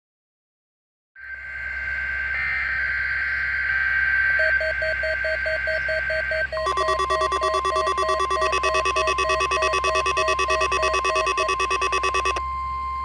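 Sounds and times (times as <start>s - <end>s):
radio hiss: 1.2s - 7.2s
rapid electronic beeping: 3.0s - 12.4s
steady high tone: 4.3s - 12.4s
steady lower tone: 4.5s - 12.5s.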